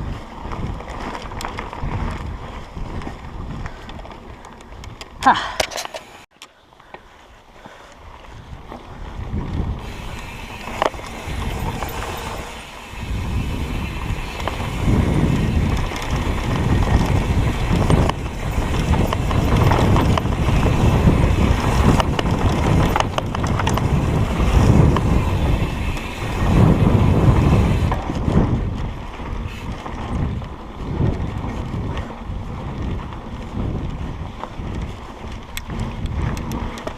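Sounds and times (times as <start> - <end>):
wind buffeting microphone: 0.0 - 5.6, 7.9 - 36.9
bicycle tyre rumble and rattling: 0.0 - 36.9
bicycle knocks: 9.8 - 28.1.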